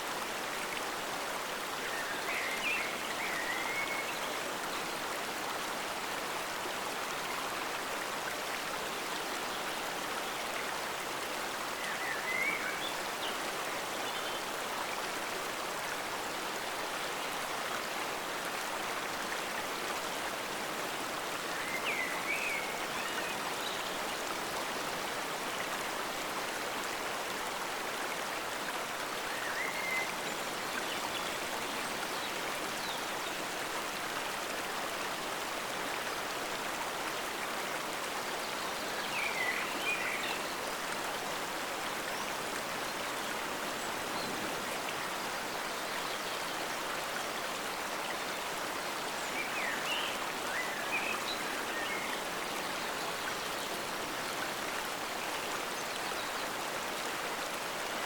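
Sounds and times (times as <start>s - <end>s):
stream water flowing: 0.0s - 58.0s.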